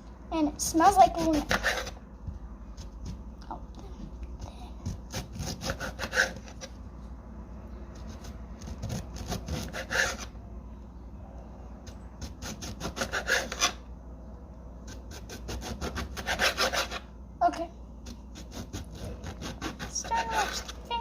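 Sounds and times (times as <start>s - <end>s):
knife sawing through lemon: 1.1s - 2.0s, 5.1s - 6.7s, 8.6s - 10.3s, 12.3s - 13.8s, 14.9s - 17.1s, 18.3s - 20.8s.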